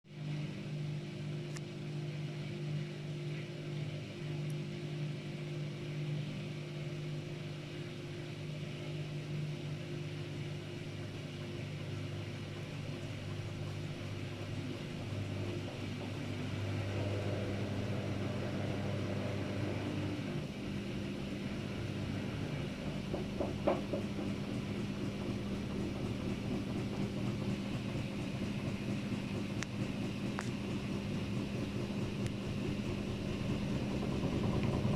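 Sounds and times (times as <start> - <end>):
washing machine spinning: 0.0 - 34.9.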